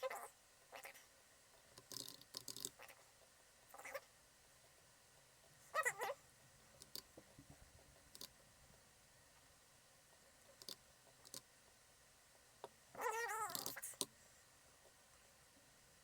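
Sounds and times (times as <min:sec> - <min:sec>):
computer mouse clicks: 0:01.8 - 0:02.8, 0:06.8 - 0:07.1, 0:08.1 - 0:08.4, 0:10.6 - 0:11.5.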